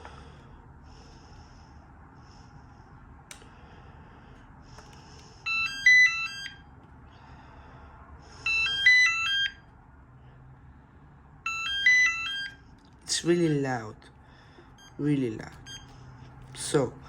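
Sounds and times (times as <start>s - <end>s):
cordless phone electronic ring: 5.4s - 6.7s, 8.4s - 9.7s, 11.4s - 12.6s.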